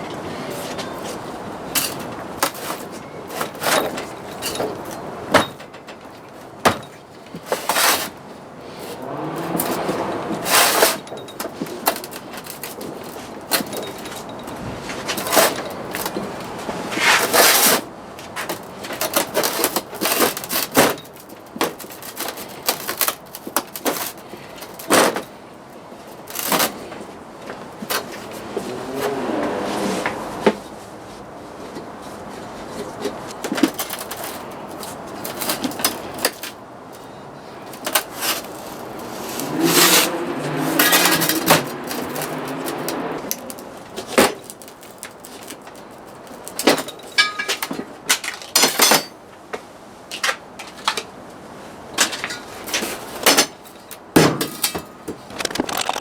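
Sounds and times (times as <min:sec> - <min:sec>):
hand tools knocking on metal parts: 0:37.6 - 0:49.2
warbling pitched sound: 0:55.3 - 0:56.0.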